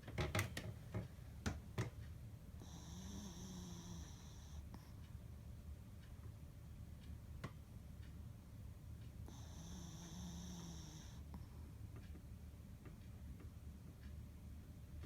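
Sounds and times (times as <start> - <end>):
dog snoring with whistle: 2.6 - 4.6, 9.2 - 11.2.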